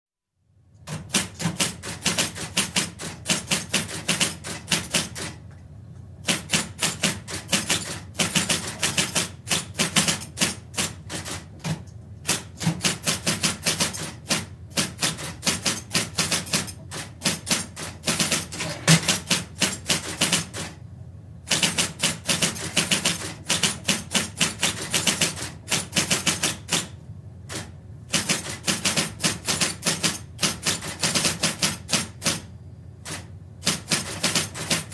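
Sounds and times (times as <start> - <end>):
typewriter key strikes: 0.8 - 5.4, 6.3 - 20.8, 21.5 - 34.9
typewriter motor hum: 0.8 - 5.4, 6.2 - 20.8, 21.4 - 34.9.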